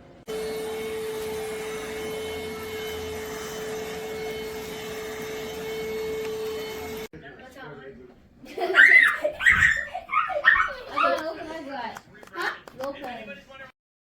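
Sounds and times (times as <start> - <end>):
vacuum cleaner running: 0.0 - 7.1.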